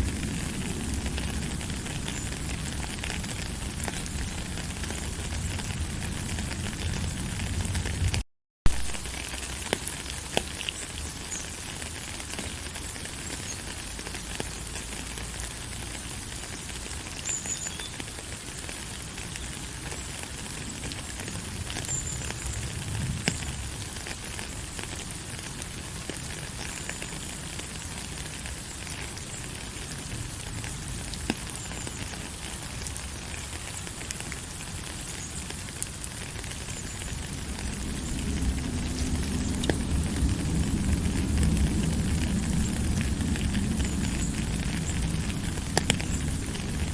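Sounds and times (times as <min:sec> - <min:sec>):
raindrops ticking: 0:00.0 - 0:46.9
steady rain hiss: 0:00.0 - 0:46.9
low rumble: 0:37.2 - 0:46.9.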